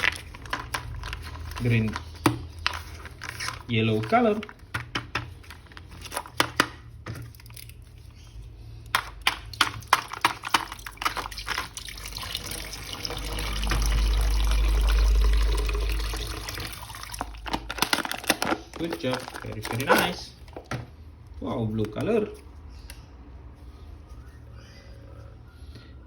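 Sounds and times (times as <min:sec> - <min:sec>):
plastic clicking and rattling: 0:00.0 - 0:07.7, 0:08.9 - 0:11.8, 0:17.4 - 0:20.9
running water: 0:10.8 - 0:17.5.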